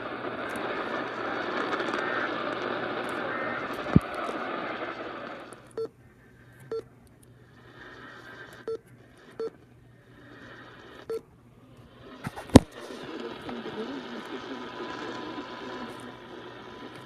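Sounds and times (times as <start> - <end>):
sharp static crackle: 0.0 - 5.8, 7.2 - 11.2, 12.0 - 17.0
faint radio hiss: 0.0 - 17.0.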